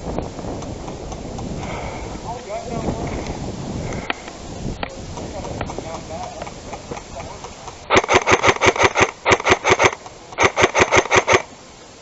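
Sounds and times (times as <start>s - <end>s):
airsoft gun full-auto bursts: 7.9s - 11.5s.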